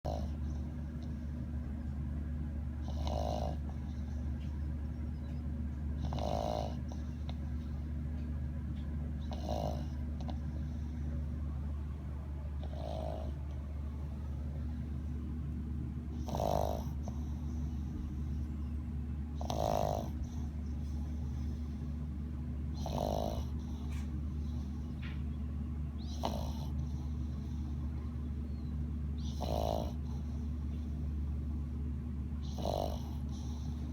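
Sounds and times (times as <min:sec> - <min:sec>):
steady low hum: 0:00.0 - 0:33.9
snoring: 0:02.8 - 0:03.8, 0:06.0 - 0:07.4, 0:09.2 - 0:10.4, 0:12.6 - 0:13.4, 0:16.2 - 0:17.5, 0:19.4 - 0:20.4, 0:22.8 - 0:23.8, 0:26.1 - 0:27.6, 0:29.2 - 0:30.3, 0:32.4 - 0:33.9.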